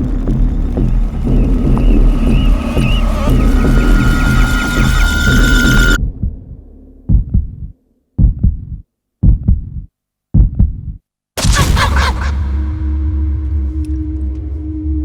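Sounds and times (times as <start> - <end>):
loud dense sound: 0.0 - 7.7
heartbeat thumps: 0.0 - 11.0.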